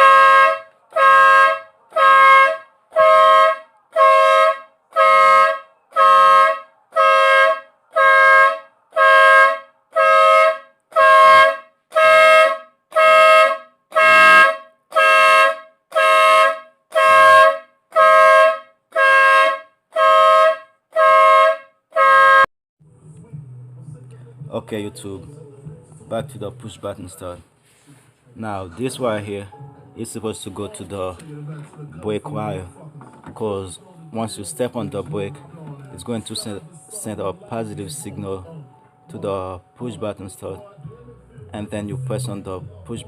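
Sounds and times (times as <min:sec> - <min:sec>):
car horn blasts: 0:00.0 - 0:22.5.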